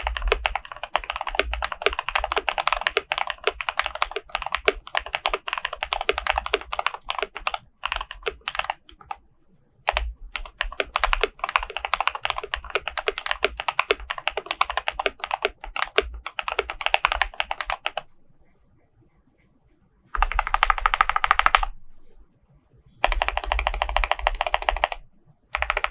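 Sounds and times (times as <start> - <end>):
mechanical keyboard typing: 0.0 - 9.2, 9.9 - 18.1, 20.2 - 21.8, 23.0 - 25.9.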